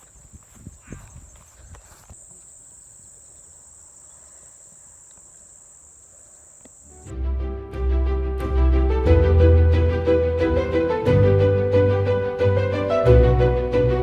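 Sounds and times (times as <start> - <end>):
insects droning: 0.0 - 7.1.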